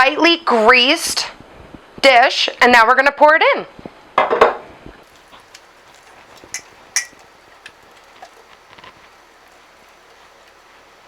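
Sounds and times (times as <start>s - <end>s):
utensil tapping mixing bowl: 5.1s - 10.8s.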